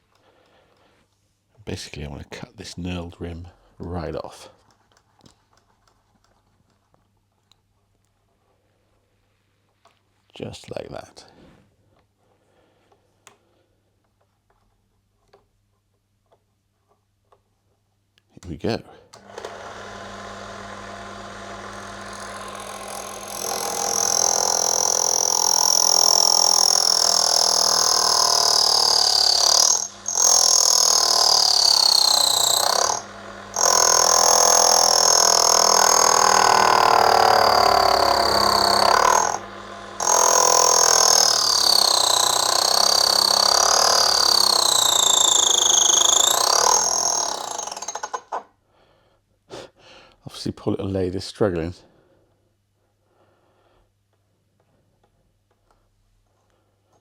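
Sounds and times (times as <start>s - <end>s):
lathe motor running: 19.2s - 47.7s
lathe tool screeching on brass: 20.0s - 47.7s.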